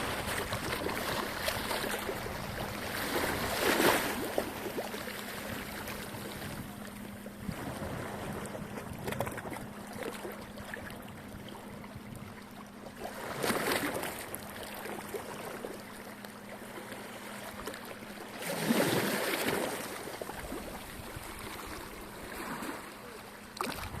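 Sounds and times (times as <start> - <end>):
wave breaking: 0.0 - 6.8, 7.4 - 10.4
faint steady hum: 0.0 - 24.0
small waves washing ashore: 0.0 - 24.0.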